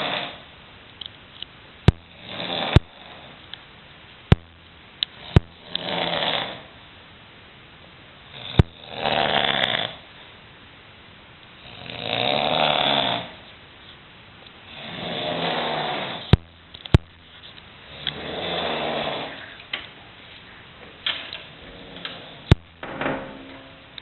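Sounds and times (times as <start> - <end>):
man snoring: 0.0 - 0.4, 2.1 - 3.4, 5.2 - 6.7, 8.3 - 10.0, 11.6 - 13.4, 14.7 - 16.3, 17.9 - 19.5
sharp clicks: 16.4 - 17.2.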